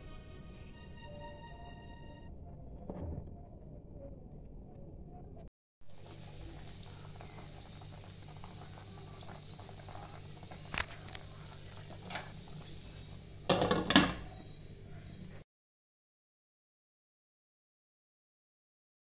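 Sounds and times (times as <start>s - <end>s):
food sizzling on stove: 5.8s - 15.4s
clatter of stirring in pan: 6.2s - 14.3s.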